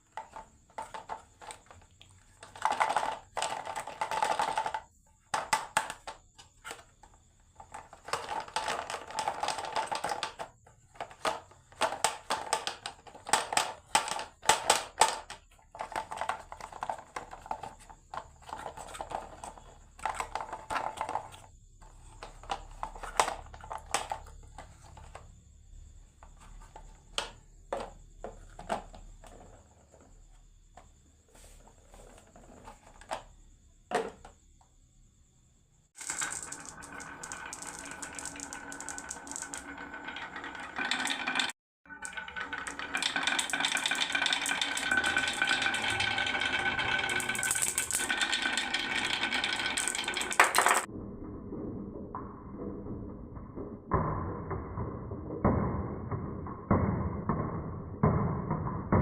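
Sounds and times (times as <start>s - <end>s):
marbles rolling on wooden track: 0.0s - 25.4s, 26.2s - 30.1s, 35.9s - 59.0s
marbles clicking on wood: 36.0s - 50.9s.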